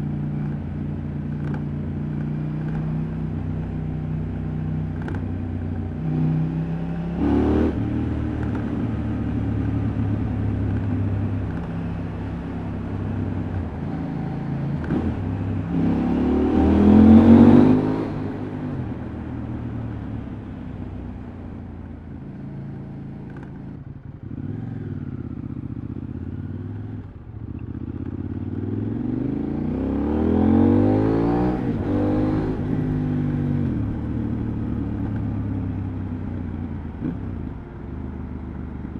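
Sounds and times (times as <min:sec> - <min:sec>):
motorcycle engine revving: 0:04.9 - 0:20.4, 0:23.3 - 0:38.9.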